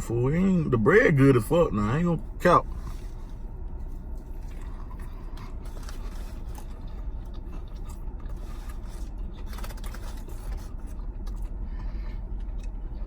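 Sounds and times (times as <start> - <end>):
steady low rumble: 0.0 - 13.0
crunchy chewing: 2.7 - 13.0.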